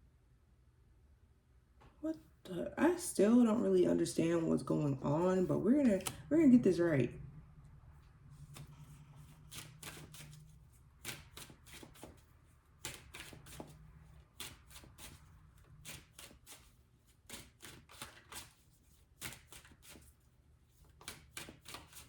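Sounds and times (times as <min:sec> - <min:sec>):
low steady hum: 0:00.0 - 0:17.0
cards being shuffled: 0:08.4 - 0:13.8, 0:15.9 - 0:20.2, 0:20.8 - 0:22.0.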